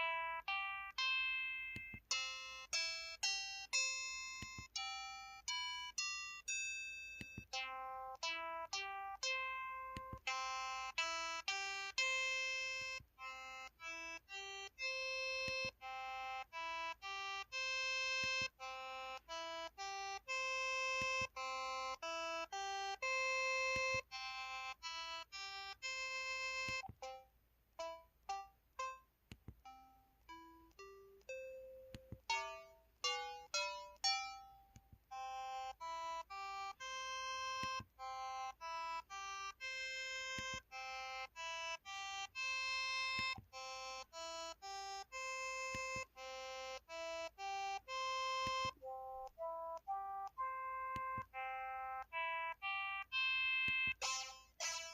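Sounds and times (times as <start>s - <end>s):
phone keypad beeping notes: 0.0s - 54.9s.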